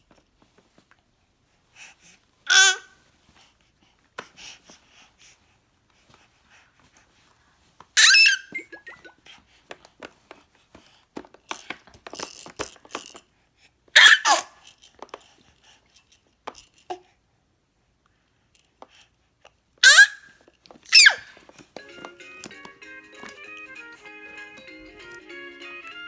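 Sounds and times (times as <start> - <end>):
baby squealing: 2.5 - 2.9, 8.0 - 9.1, 14.0 - 14.5, 19.8 - 20.3, 20.9 - 21.3.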